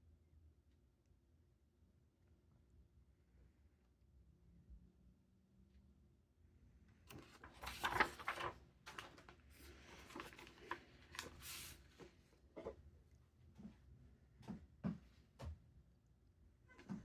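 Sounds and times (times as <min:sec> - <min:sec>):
packaging rustling and scraping: 0:07.1 - 0:12.0.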